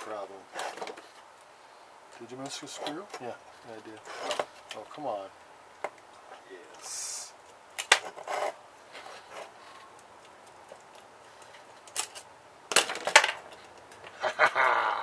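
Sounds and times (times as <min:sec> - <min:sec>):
rubbing: 0:02.6 - 0:04.7, 0:08.0 - 0:09.9
scrape: 0:04.0 - 0:04.4, 0:08.1 - 0:09.9
clicks and knocks of parts: 0:09.3 - 0:14.2.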